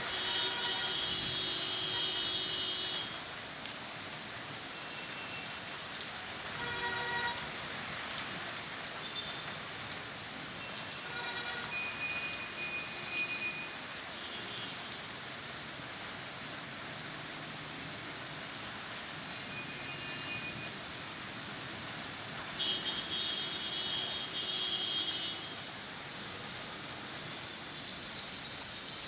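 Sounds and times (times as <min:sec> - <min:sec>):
steady rain hiss: 0:00.0 - 0:29.0.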